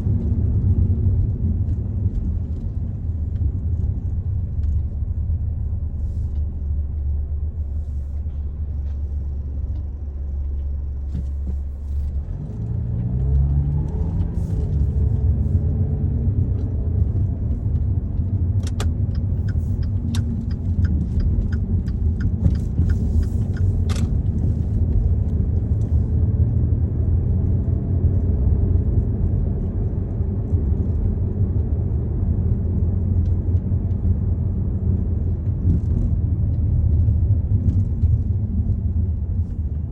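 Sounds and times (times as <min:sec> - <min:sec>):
car road and engine rumble: 0:00.0 - 0:39.9
sharp ticks: 0:18.7 - 0:24.0.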